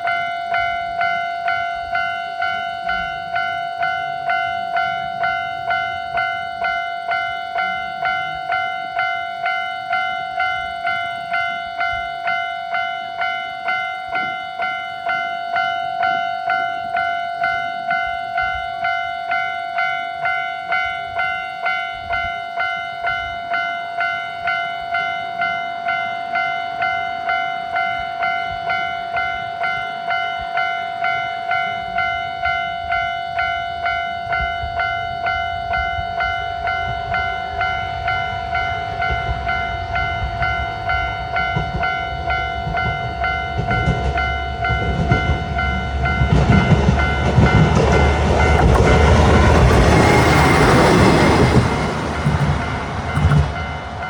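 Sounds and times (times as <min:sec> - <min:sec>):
level-crossing alarm ringing: 0:00.0 - 0:54.0
low rumble: 0:44.7 - 0:54.0.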